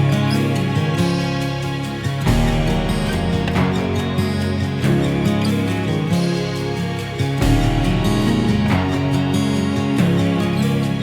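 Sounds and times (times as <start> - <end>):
gentle background music: 0.0 - 11.0
plucked guitar-like tone: 0.0 - 11.0.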